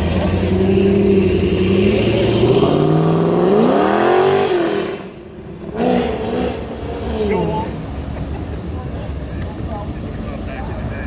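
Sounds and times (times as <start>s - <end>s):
car engine revving: 0.0s - 8.6s.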